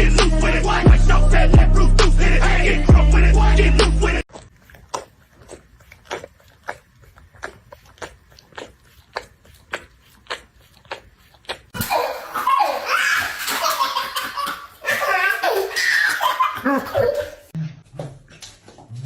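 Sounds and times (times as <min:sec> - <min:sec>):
people laughing loudly: 0:11.8 - 0:17.5.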